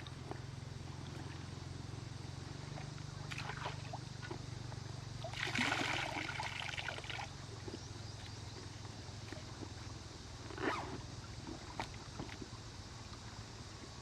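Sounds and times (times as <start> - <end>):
steady low hum: 0.0 - 14.0
water splashing: 5.2 - 7.3.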